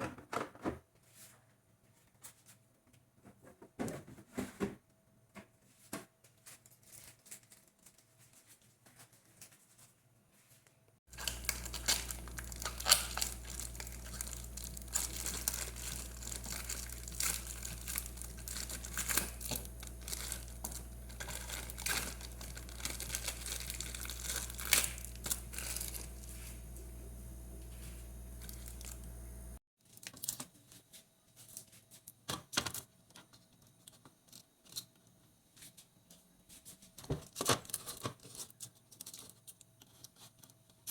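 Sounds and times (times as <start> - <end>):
packaging crinkling and tearing: 6.5 - 8.4, 11.1 - 26.6, 28.4 - 29.1, 37.3 - 40.9
steady low hum: 11.1 - 29.6.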